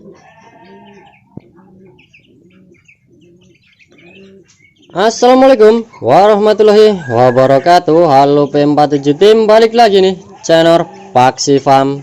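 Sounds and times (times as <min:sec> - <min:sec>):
bird cooing: 0:00.0 - 0:05.0
high bird chirps: 0:00.2 - 0:06.2.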